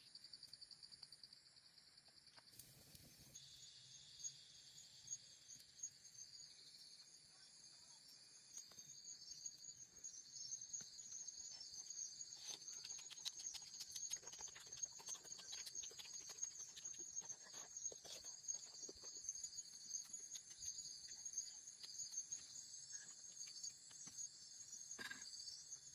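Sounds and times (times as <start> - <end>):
insects chirping: 0.0 - 25.9.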